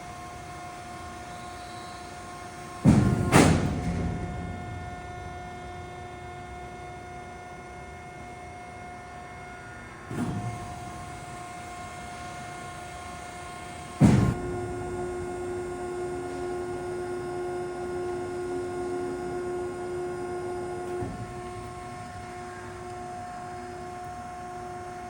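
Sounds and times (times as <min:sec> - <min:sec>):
machine hum: 0:00.0 - 0:25.0
heavy clunks: 0:02.8 - 0:05.7.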